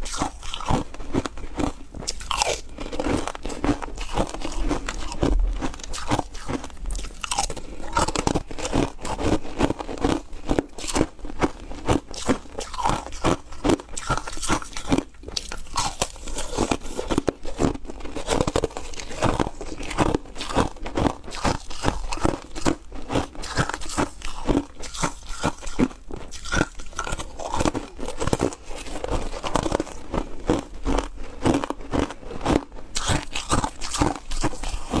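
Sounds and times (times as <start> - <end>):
crunching and chewing ice: 0.0 - 35.0.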